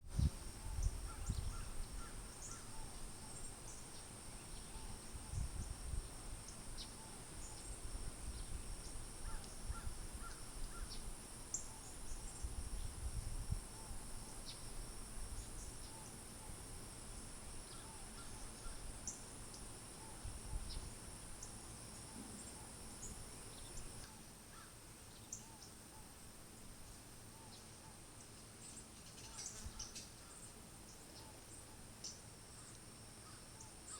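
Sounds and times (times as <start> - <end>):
wind rumble on microphone: 0.0 - 16.8, 20.0 - 21.2
high-pitched insect buzz: 0.1 - 24.6.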